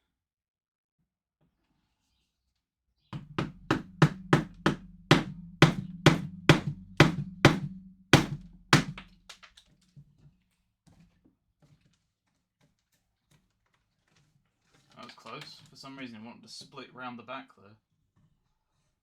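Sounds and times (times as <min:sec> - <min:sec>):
mallet striking chisel into wood: 0:03.2 - 0:09.4.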